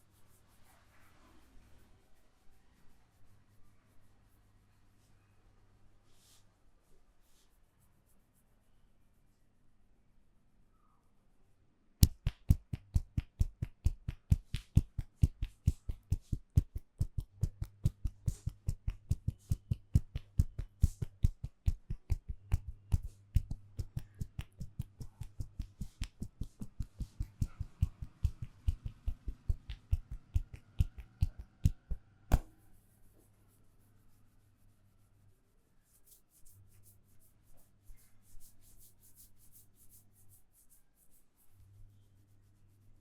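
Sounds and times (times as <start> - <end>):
rapid hand strikes massage: 12.0 - 32.8.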